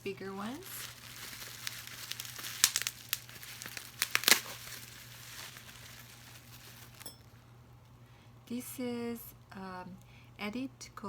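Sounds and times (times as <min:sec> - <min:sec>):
plastic wrapping crinkling: 0:00.0 - 0:07.2.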